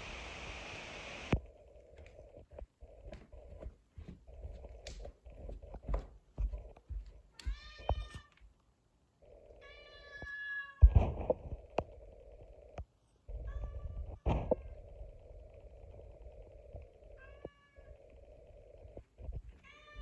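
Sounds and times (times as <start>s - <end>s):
cat meowing: 7.4s - 8.4s, 19.6s - 20.0s.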